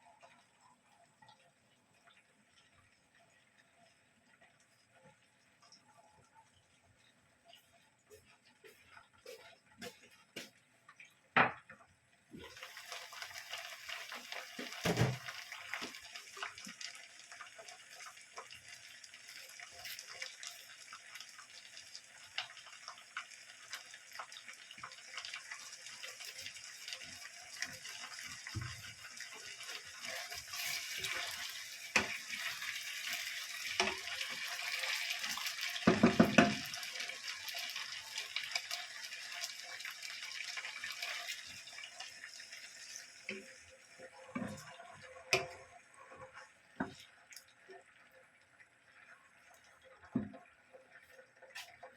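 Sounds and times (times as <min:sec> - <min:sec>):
water running from tap into sink: 0:12.4 - 0:45.8
knocks in sink: 0:35.9 - 0:36.6.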